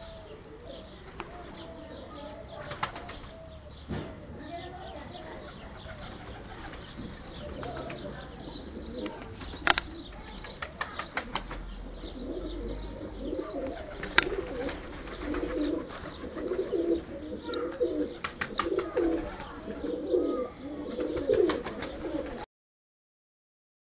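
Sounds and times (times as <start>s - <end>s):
pigeons cooing: 0.0s - 22.4s
wing flapping: 2.6s - 3.3s, 5.4s - 8.0s, 9.1s - 11.8s, 13.6s - 19.7s, 20.9s - 22.4s
wing claps: 9.0s - 11.6s, 14.0s - 16.0s.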